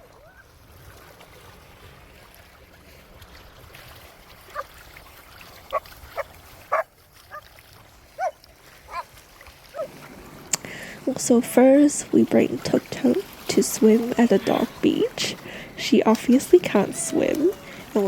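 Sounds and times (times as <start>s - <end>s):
dog yelping: 5.7s - 7.4s, 8.2s - 9.1s, 9.7s - 9.9s.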